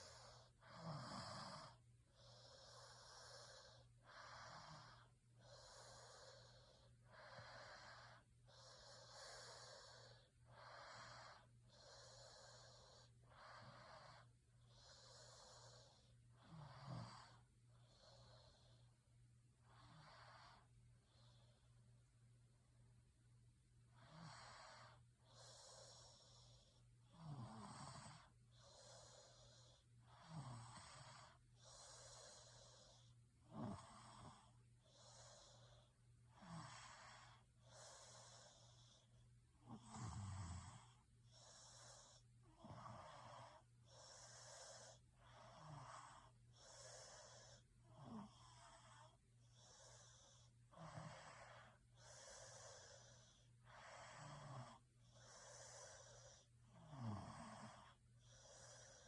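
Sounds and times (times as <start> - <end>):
person snoring: 0.0 - 18.8, 23.9 - 59.0.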